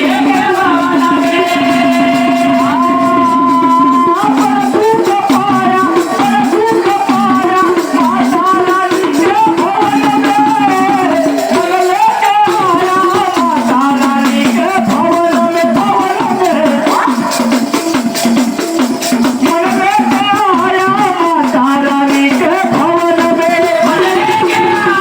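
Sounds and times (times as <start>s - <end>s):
person singing devotional song: 0.0s - 25.0s
rattles and hand drums: 0.0s - 25.0s.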